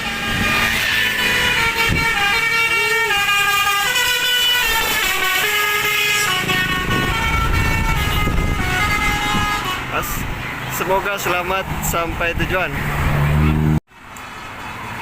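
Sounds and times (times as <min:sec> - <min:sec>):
multi-tone bus horn melody: 0:00.0 - 0:11.5
bus engine running: 0:00.0 - 0:15.0.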